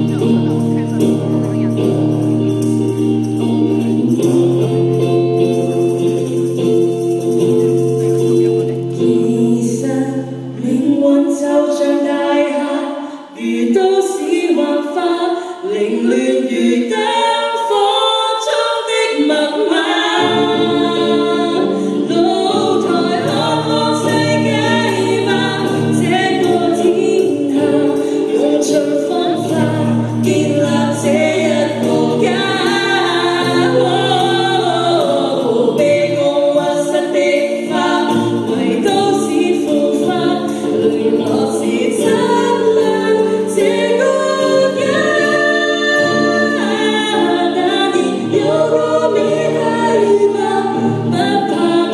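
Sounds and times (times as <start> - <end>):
choir singing in harmony: 8.9 - 51.9.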